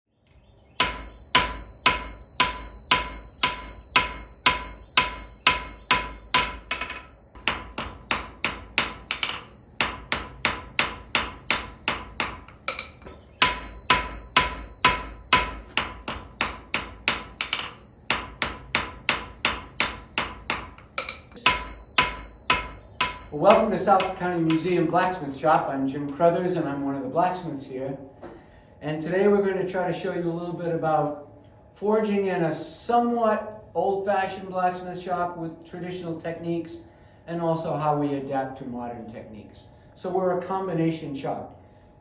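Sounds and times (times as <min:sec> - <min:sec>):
hammer striking an anvil: 0:00.8 - 0:25.9.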